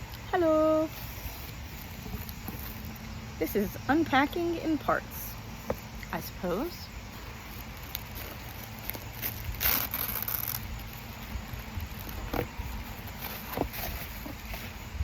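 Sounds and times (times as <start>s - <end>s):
packaging rustle: 7.5s - 14.9s
packaging clicks and scrapes: 7.6s - 14.8s.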